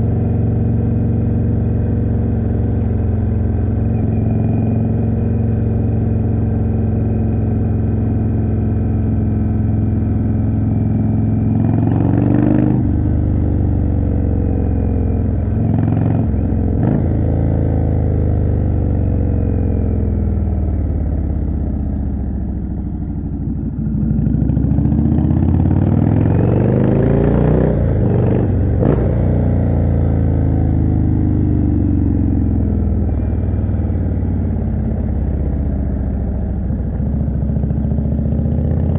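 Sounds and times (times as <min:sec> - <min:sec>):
motorcycle engine revving: 0:08.2 - 0:22.3, 0:23.5 - 0:38.9.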